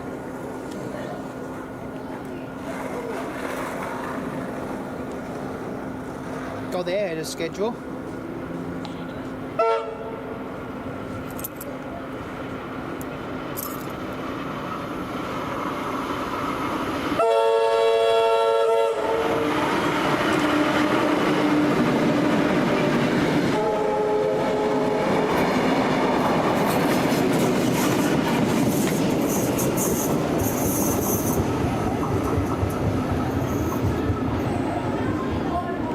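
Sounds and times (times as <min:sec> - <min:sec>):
electric train passing: 0:00.0 - 0:35.9
train horn blasts: 0:09.5 - 0:10.4, 0:17.2 - 0:21.2, 0:23.4 - 0:25.4.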